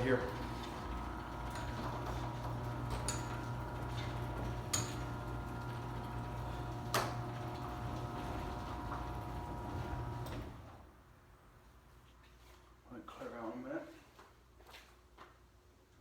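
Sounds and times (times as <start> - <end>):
garage door motor hum: 0.0 - 10.9.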